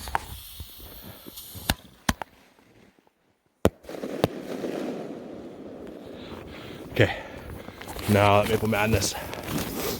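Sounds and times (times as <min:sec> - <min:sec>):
fireworks bangs: 0:03.6 - 0:07.1.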